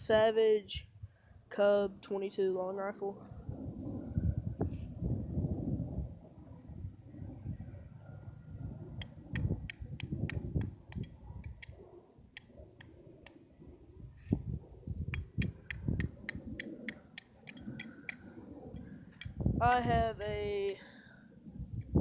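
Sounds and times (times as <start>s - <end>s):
sharp high clicks: 9.0s - 11.8s, 15.1s - 18.2s.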